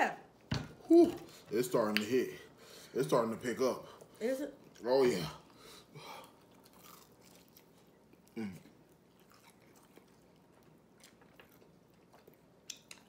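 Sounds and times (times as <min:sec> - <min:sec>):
chewing chicken wings: 0:06.2 - 0:13.0.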